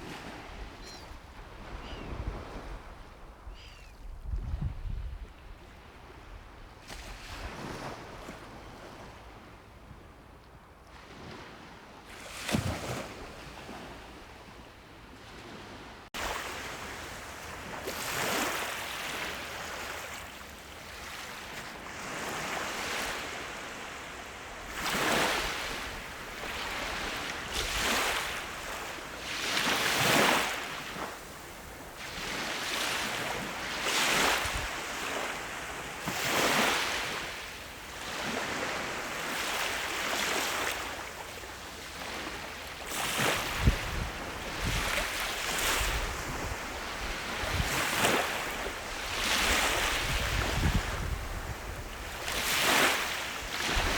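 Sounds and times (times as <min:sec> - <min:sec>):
sea waves breaking: 0:15.4 - 0:20.3, 0:21.0 - 0:53.9.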